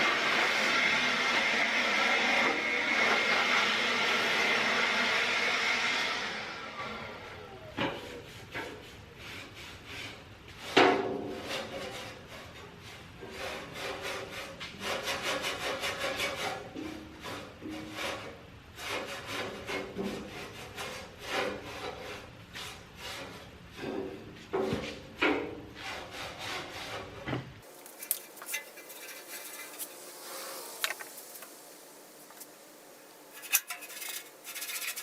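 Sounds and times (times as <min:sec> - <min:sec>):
brush scrubbing a saw table: 0:07.9 - 0:24.2, 0:25.7 - 0:32.6, 0:33.2 - 0:35.0
faint scraping: 0:27.6 - 0:35.0.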